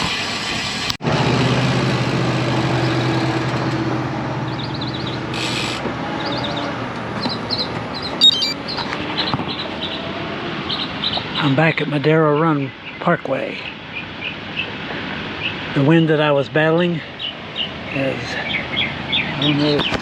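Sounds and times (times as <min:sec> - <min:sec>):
wind and road noise: 0:00.0 - 0:20.0
large engine low hum: 0:00.1 - 0:11.3
birds chirping: 0:04.4 - 0:20.0.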